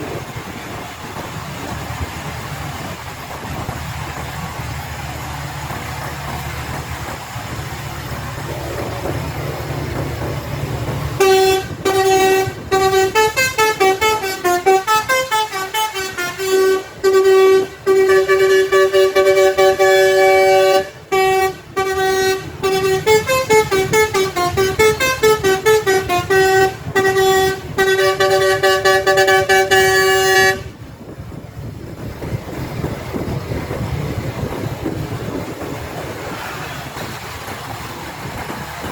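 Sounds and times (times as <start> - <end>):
low engine rumble: 0.0 - 38.9
bus horn playing melodic toots: 11.1 - 30.8.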